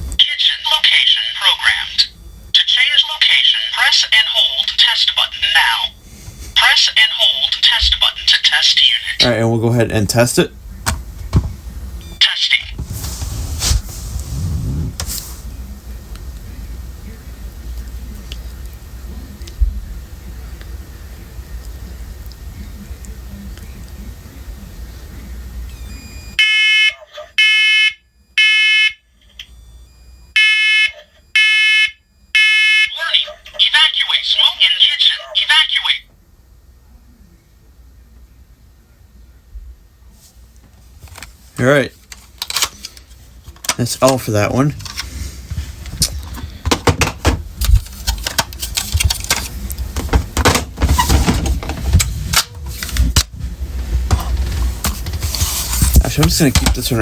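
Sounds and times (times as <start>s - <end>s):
smoke alarm beeping: 25.7s - 32.9s.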